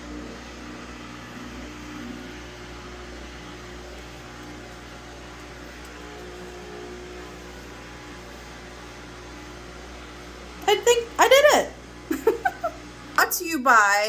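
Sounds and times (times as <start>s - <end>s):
washing machine drain pump hum: 0.0s - 14.0s.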